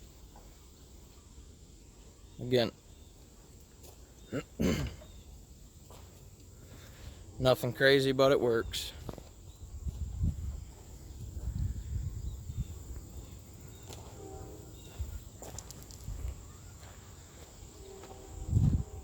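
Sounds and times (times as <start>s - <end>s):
crickets chirring: 0.0s - 19.0s
footsteps: 5.8s - 7.1s, 8.9s - 11.8s, 12.9s - 19.0s.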